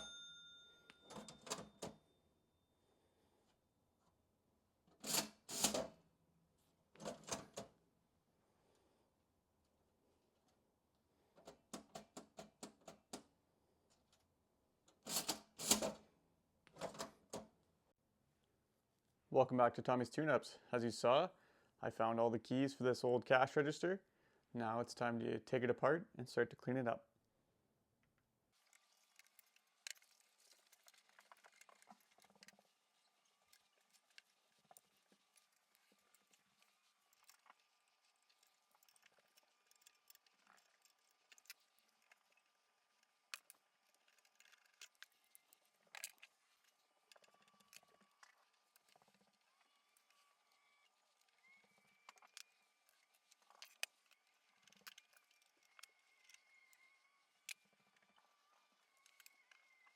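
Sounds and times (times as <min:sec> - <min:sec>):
cash register mechanism clicking: 0:00.9 - 0:02.0, 0:05.0 - 0:06.0, 0:15.1 - 0:16.0
cash register clattering strokes: 0:05.0 - 0:06.0, 0:15.1 - 0:16.0
tools and metal parts clicking: 0:38.3 - 0:42.4, 0:43.3 - 0:49.2, 0:52.1 - 0:56.4.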